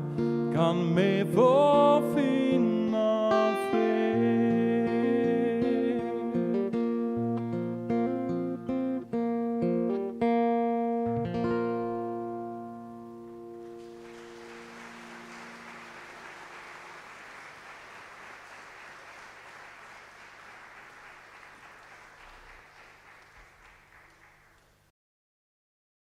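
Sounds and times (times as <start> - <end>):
band chord with acoustic guitar: 13.6 - 19.7
audience applauding: 13.6 - 24.8.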